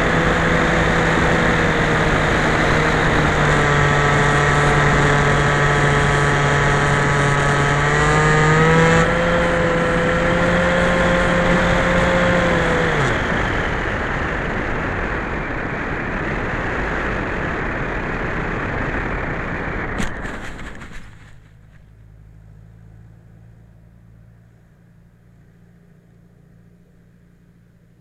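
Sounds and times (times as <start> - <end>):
rushing air and motor: 0.0 - 22.2
faint low hum: 20.0 - 28.0.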